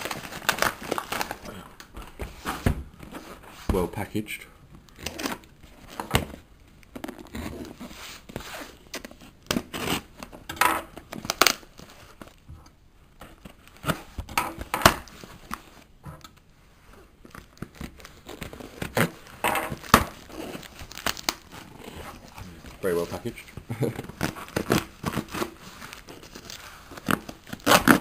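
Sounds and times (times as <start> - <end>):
packaging tearing and rustling: 0.0 - 3.4, 4.9 - 12.4, 17.2 - 28.0.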